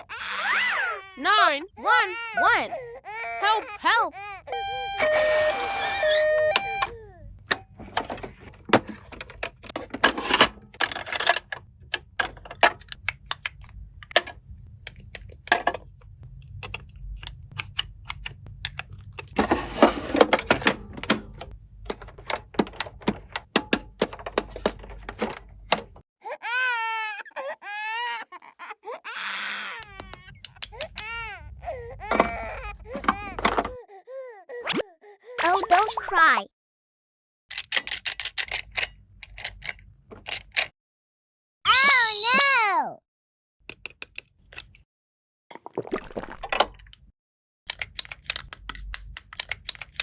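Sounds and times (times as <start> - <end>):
wavering crying: 0.0 - 7.2, 26.2 - 35.4
plastic toys clicking and tapping: 7.5 - 19.4, 20.2 - 26.0, 29.8 - 31.2, 32.1 - 33.8, 37.5 - 40.7, 43.7 - 44.8, 47.7 - 50.0.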